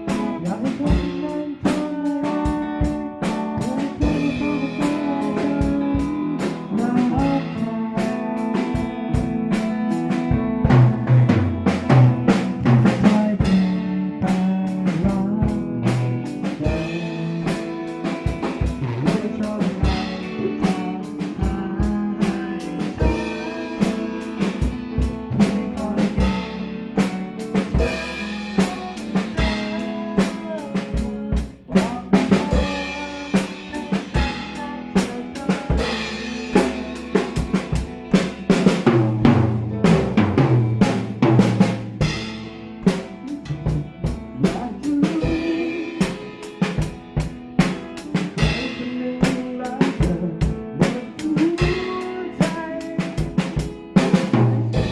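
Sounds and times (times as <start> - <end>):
band playing instrumental pop: 0.0 - 54.9
drum kit beat: 0.0 - 54.9.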